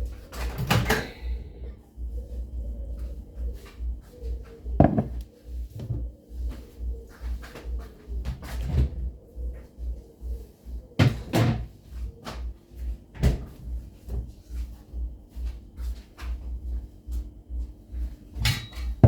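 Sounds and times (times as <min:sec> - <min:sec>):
kitchen knocks and bangs: 0:04.8 - 0:05.2.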